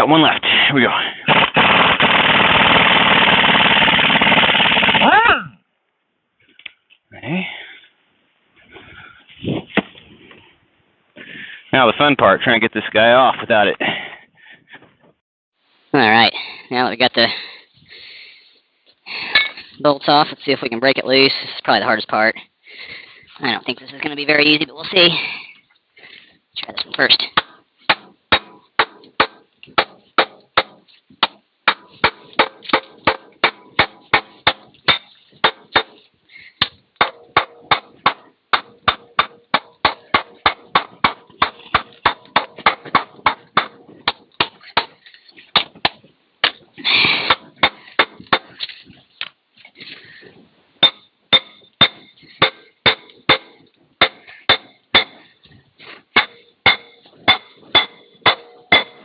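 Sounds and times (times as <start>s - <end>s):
hammer ringing on steel: 50.8s - 55.2s, 56.2s - 59.0s.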